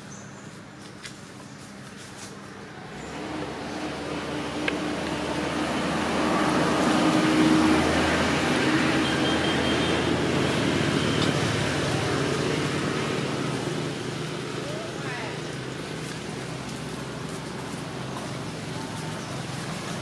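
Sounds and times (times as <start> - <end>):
faint engine hum: 0.0 - 20.0
road traffic rushing: 0.0 - 20.0
vehicle passing: 2.5 - 20.0.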